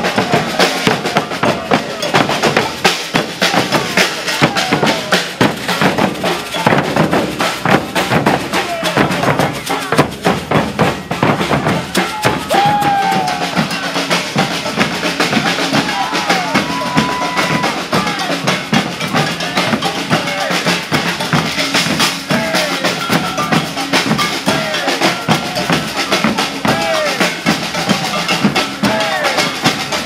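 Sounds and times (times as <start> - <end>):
bass drums: 0.0 - 30.0
snare drums: 0.0 - 30.0.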